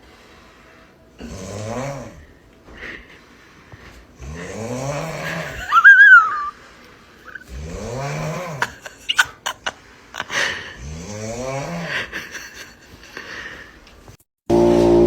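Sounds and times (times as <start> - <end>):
person snoring: 1.2 - 2.2, 4.2 - 6.5, 7.3 - 8.8, 10.3 - 12.1.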